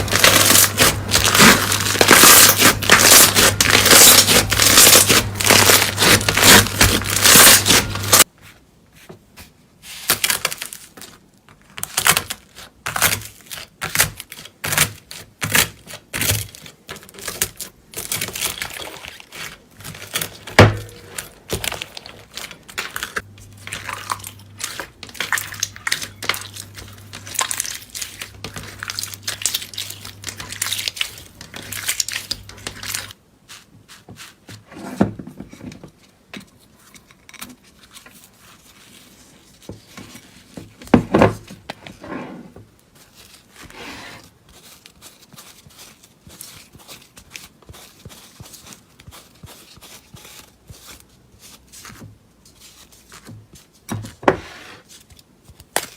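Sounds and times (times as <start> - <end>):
slime crackling and popping: 0.0 - 8.2, 23.8 - 33.1.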